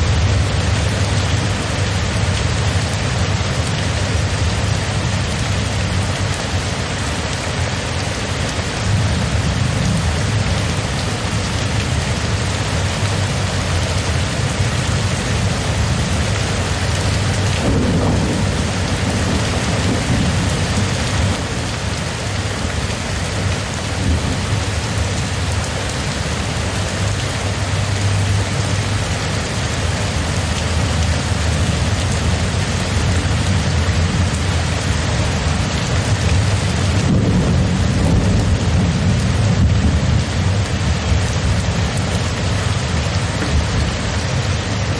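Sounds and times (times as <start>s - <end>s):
steady rain falling: 0.0s - 44.9s
thunder rumbling: 13.4s - 25.6s, 30.9s - 44.6s.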